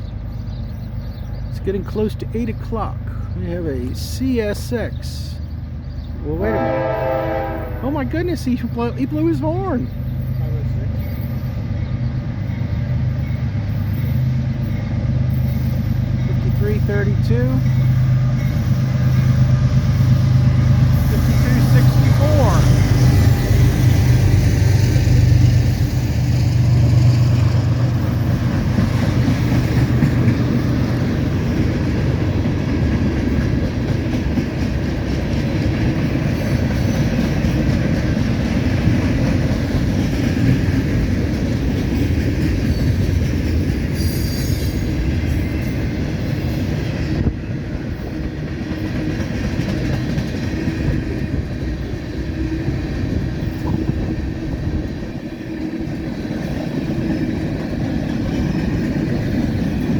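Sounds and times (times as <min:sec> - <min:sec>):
diesel locomotive hum: 0:00.0 - 0:59.9
freight train wheels on rail: 0:00.0 - 0:59.9
wheel squeal: 0:44.0 - 0:45.7.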